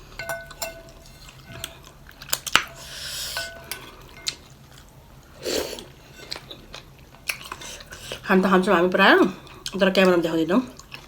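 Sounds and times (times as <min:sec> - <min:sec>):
spoon clinking against bowl: 0:00.2 - 0:01.6.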